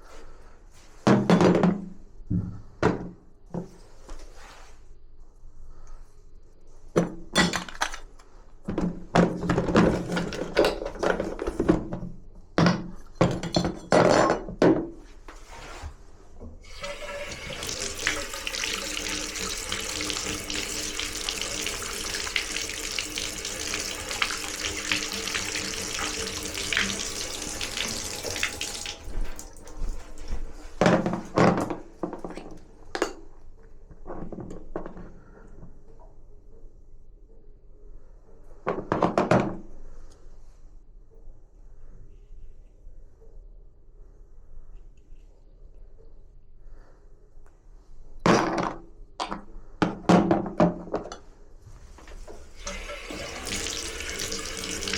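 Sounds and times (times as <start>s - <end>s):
objects knocking and clattering: 1.1s - 3.8s, 7.0s - 15.0s, 24.1s - 33.3s, 38.7s - 39.6s, 48.3s - 52.4s
water running from a tap: 16.6s - 30.6s, 52.2s - 54.9s.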